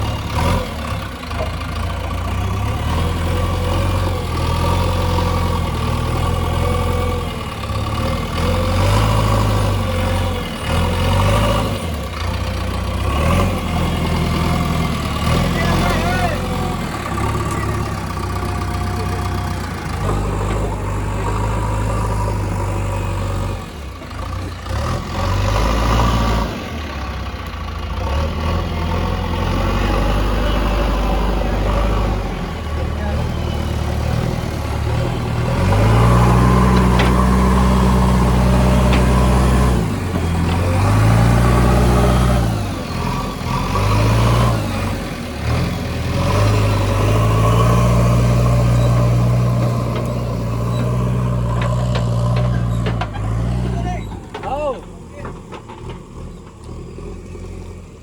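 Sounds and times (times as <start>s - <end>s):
heavy diesel engines revving: 0.0s - 58.0s.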